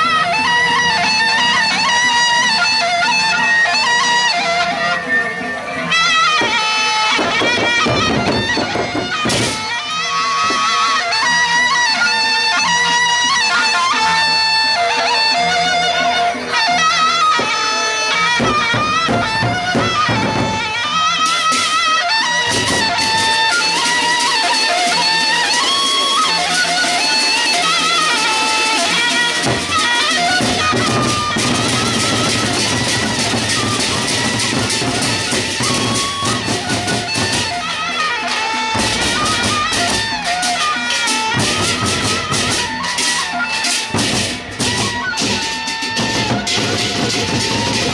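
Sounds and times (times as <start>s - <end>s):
large drums and percussion: 0.0s - 47.9s
reed wind instrument melody: 0.0s - 47.9s.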